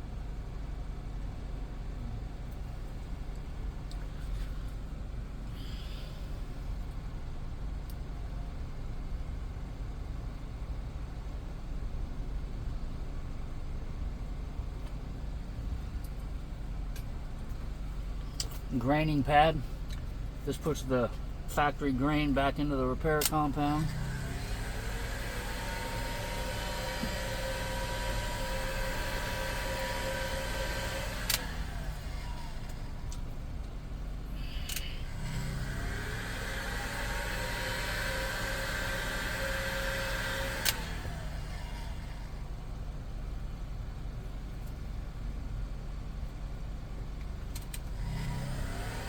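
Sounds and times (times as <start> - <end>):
heat gun blowing with whining fan: 23.2 - 33.3, 34.3 - 42.6, 47.6 - 49.0
sharp clicks: 31.2 - 31.6, 40.6 - 41.1.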